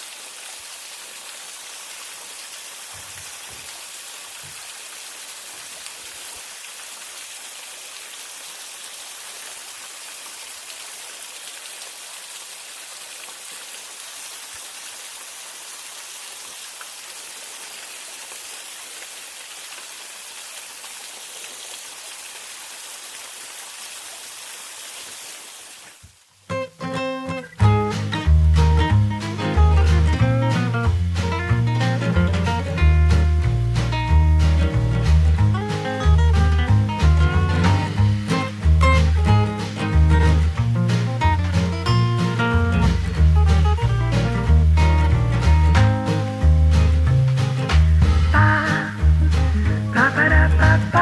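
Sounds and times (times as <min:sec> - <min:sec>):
water rushing at waterfall: 0:00.0 - 0:27.4.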